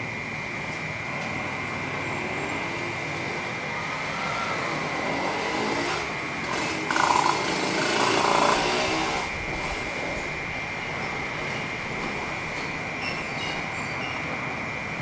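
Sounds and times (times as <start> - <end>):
cicada drone: 0.0 - 15.0
traffic noise: 0.0 - 15.0
shrill squeal: 12.6 - 14.3.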